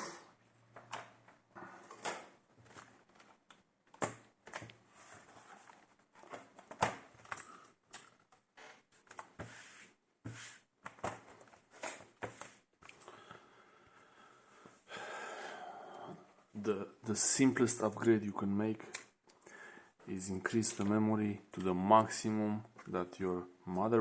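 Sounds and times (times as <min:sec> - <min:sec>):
objects handled on a desk: 0:00.7 - 0:13.0.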